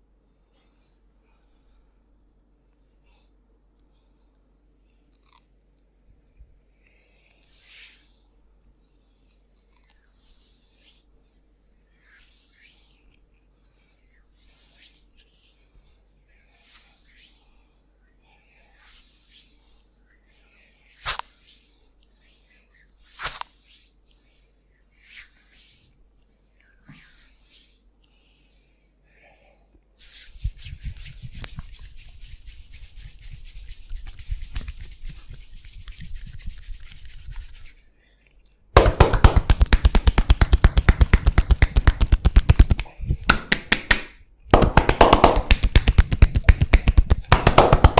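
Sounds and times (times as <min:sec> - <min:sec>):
hands stroking skin: 0:21.0 - 0:21.6, 0:23.0 - 0:25.7, 0:30.0 - 0:37.8, 0:38.8 - 0:47.9
brisk rubbing: 0:30.4 - 0:37.8
hands chopping and slapping: 0:38.8 - 0:47.9.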